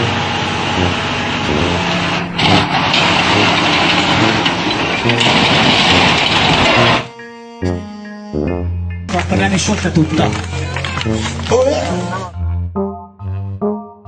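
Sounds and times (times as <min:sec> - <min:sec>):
loud machinery noise: 0:00.0 - 0:07.1, 0:09.1 - 0:12.2.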